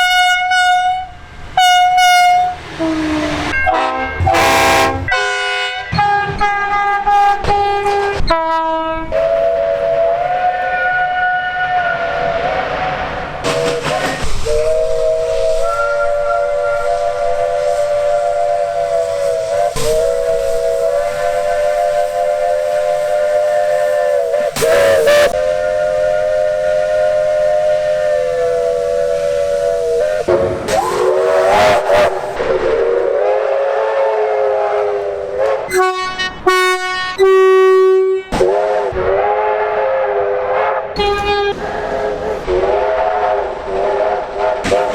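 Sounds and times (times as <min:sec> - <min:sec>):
single-note horn: 0:00.0 - 0:11.7, 0:23.6 - 0:28.7, 0:34.7 - 0:43.2
multi-note train horn chords: 0:00.0 - 0:44.9.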